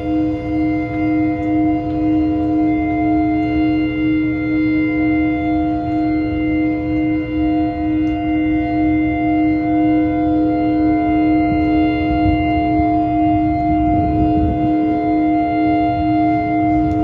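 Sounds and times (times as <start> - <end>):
ships' horns blasting a chord: 0.0 - 17.0.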